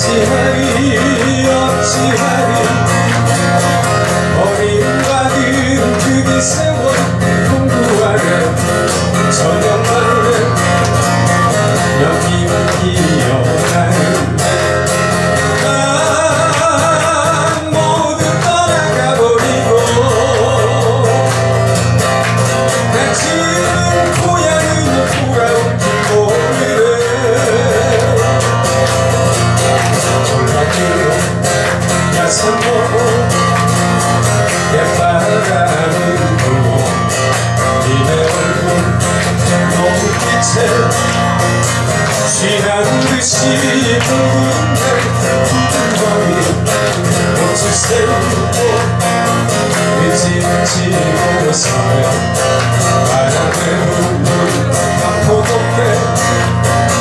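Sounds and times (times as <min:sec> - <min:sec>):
live guitar music: 0:00.0 - 0:57.0.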